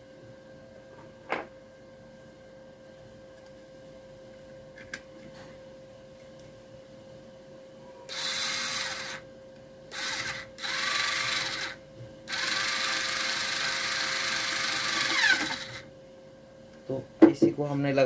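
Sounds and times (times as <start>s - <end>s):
faint steady hum: 0.0s - 18.0s
handheld power tool motor running: 8.1s - 9.2s, 9.9s - 15.9s.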